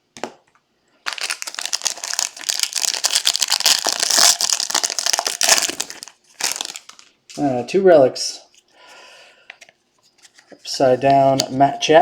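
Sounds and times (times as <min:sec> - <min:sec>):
plastic wrapper crinkling and tearing: 0:01.0 - 0:07.4.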